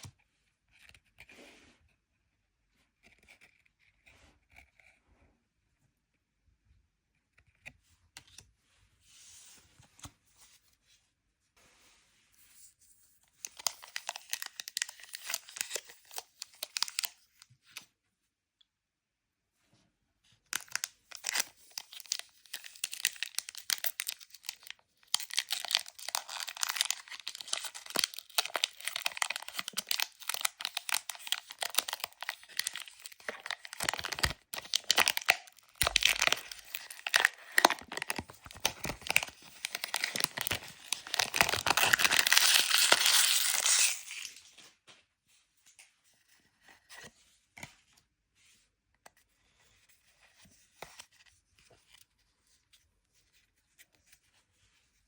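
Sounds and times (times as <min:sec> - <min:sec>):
card packaging tearing and crinkling: 0:13.4 - 0:17.1, 0:20.6 - 0:44.5.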